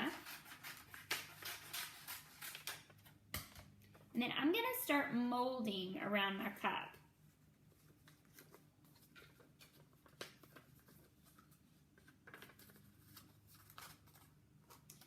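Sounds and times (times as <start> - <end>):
paper rustling and crinkling: 0.0 - 3.2, 7.1 - 15.0
low room hum: 0.0 - 15.0.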